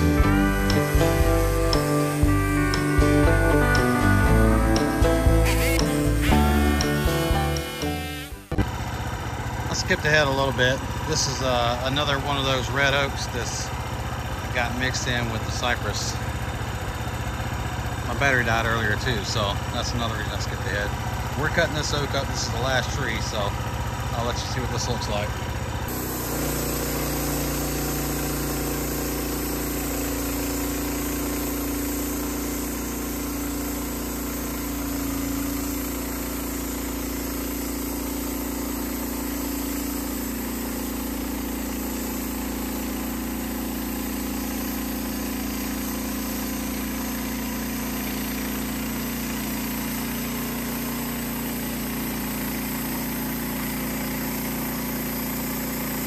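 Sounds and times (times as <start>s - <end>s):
gasoline engine droning under load: 0.0s - 56.0s
band blade sawing through log: 25.9s - 56.0s.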